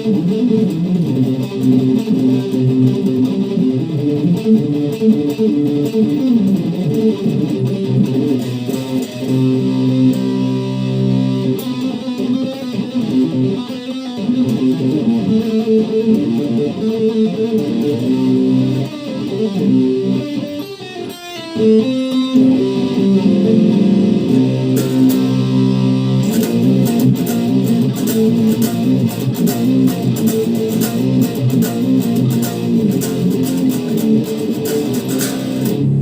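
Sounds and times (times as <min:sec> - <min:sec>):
overdriven electric guitar: 0:00.0 - 0:36.0.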